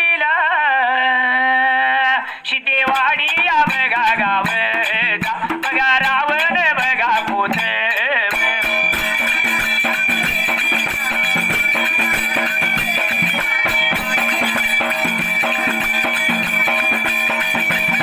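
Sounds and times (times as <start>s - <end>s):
fast steady beat: 2.8s - 18.0s.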